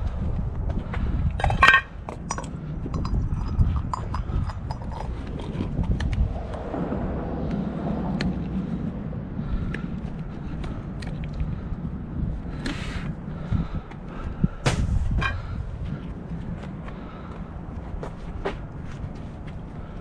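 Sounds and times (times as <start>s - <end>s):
scrap metal clanking and rattling: 1.4s - 5.2s.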